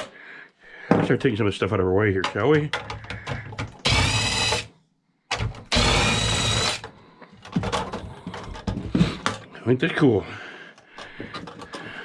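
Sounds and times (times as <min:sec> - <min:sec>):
light handling of parts: 0:00.9 - 0:03.8, 0:06.8 - 0:09.6, 0:10.7 - 0:12.0
power drill spinning out screws: 0:03.7 - 0:04.7, 0:05.4 - 0:06.9.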